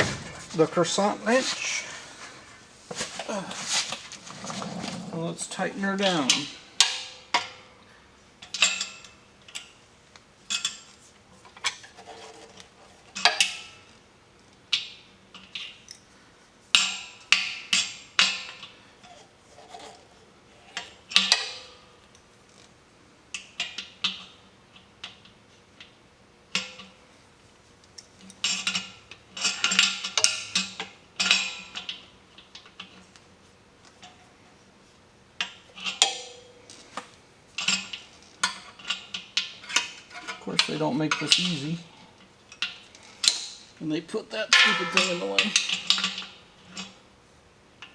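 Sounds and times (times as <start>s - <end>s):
wrench clanking on metal fitting: 44.5s - 46.4s.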